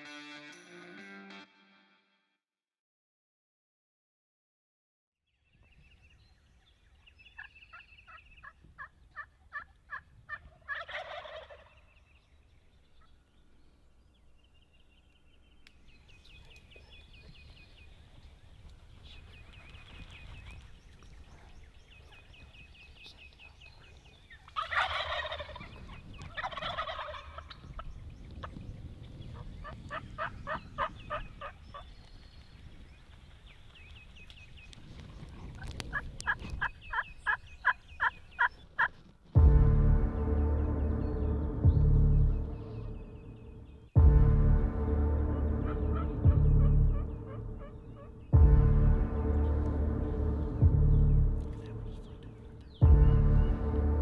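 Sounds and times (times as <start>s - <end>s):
turkeys gobbling: 7.4s - 12.0s, 23.9s - 27.8s, 29.4s - 31.9s, 35.0s - 39.0s, 45.6s - 48.3s
turkey yelps: 8.8s - 11.8s, 24.4s - 27.6s, 29.6s - 31.8s, 35.5s - 39.0s.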